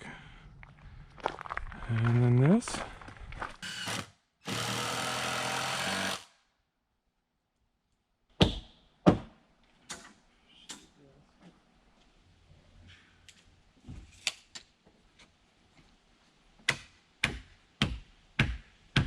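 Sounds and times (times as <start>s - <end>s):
handheld power tool running: 3.6s - 6.3s.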